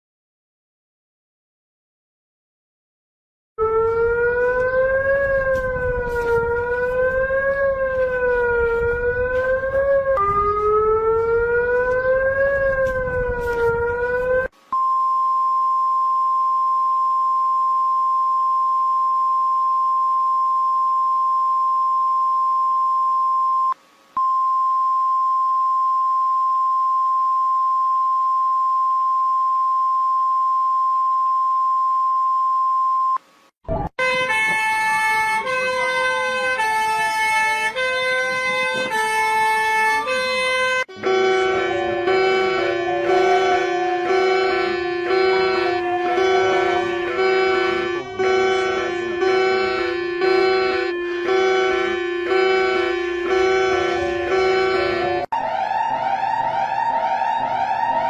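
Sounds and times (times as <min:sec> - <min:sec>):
wavering siren-like tone: 0:03.6 - 0:14.5, 0:40.9 - 0:58.0
steady single-pitch alert tone: 0:14.7 - 0:33.2, 0:40.9 - 0:55.7
noisy hum: 0:40.9 - 0:55.3.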